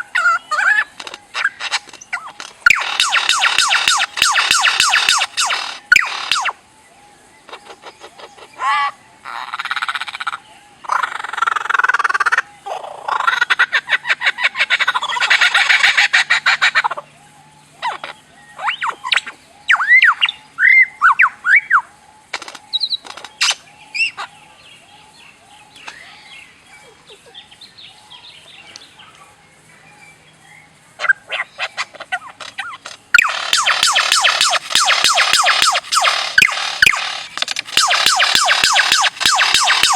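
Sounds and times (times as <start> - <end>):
harsh bird chattering: 0.0 - 6.6, 7.5 - 17.0, 31.0 - 39.9
whistled bird notes: 0.0 - 7.4, 17.8 - 22.0, 33.2 - 39.9
soft bird chirping: 0.0 - 13.2, 14.8 - 39.9.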